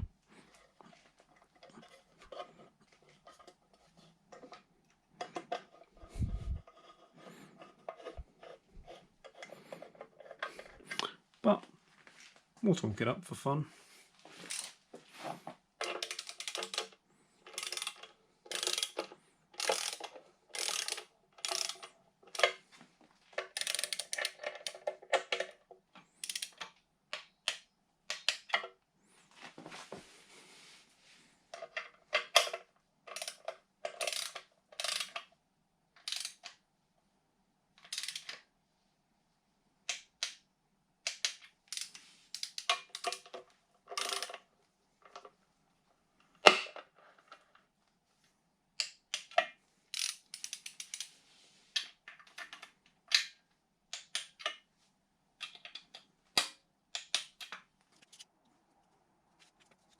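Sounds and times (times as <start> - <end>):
ratcheting torque wrench clicking: 14.4 - 14.7, 15.8 - 16.9, 17.5 - 22.5, 23.5 - 24.8, 26.2 - 26.6, 33.1 - 35.2, 36.0 - 36.5, 37.9 - 38.4, 41.1 - 43.2, 44.0 - 44.4, 49.9 - 51.1.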